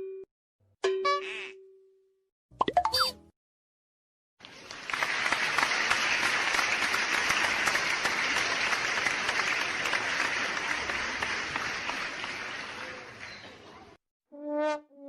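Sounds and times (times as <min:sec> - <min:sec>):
crowd applause: 0:04.4 - 0:14.0.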